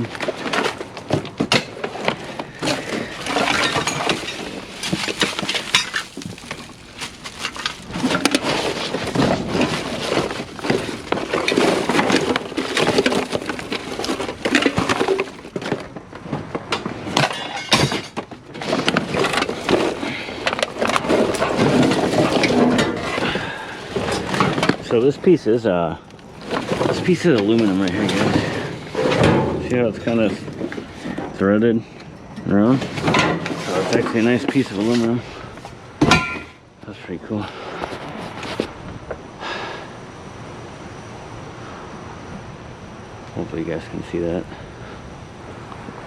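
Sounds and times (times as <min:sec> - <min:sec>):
scrap clattering in metal dumpster: 0:00.0 - 0:15.8, 0:16.4 - 0:25.2, 0:26.4 - 0:31.2, 0:36.0 - 0:36.6.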